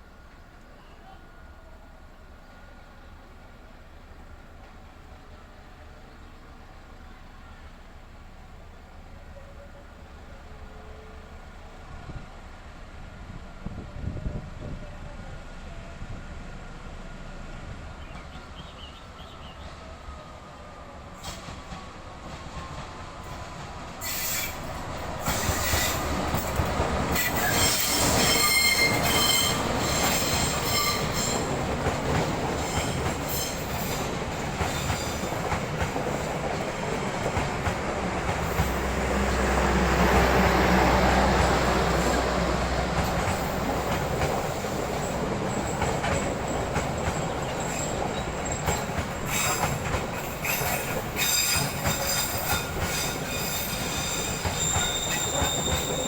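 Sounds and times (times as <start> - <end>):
deep train hum: 0.0 - 56.0
clickety-clack over rail joints: 21.2 - 56.0
train wheels squealing: 24.0 - 35.6, 38.4 - 56.0.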